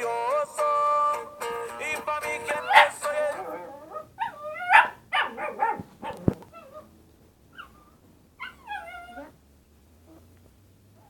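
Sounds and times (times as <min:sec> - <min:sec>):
dog howling: 0:02.6 - 0:06.9, 0:08.4 - 0:09.3.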